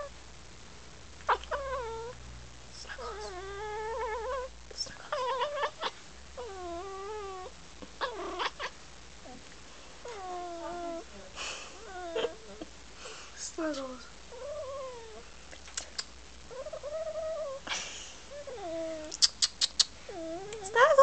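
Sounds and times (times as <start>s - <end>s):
cat chattering meows and trills: 1.3s - 2.2s, 3.0s - 8.8s.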